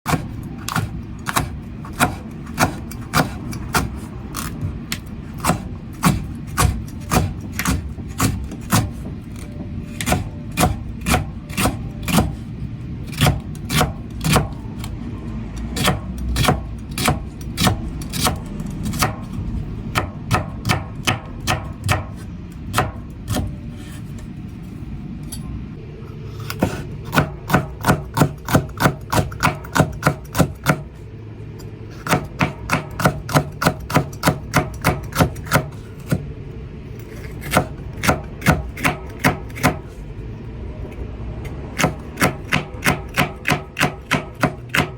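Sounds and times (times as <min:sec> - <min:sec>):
knife chopping on cutting board: 0:00.1 - 0:12.4, 0:13.1 - 0:14.6, 0:15.7 - 0:24.0, 0:26.5 - 0:30.9, 0:32.0 - 0:36.2, 0:37.2 - 0:40.0, 0:41.8 - 0:44.9.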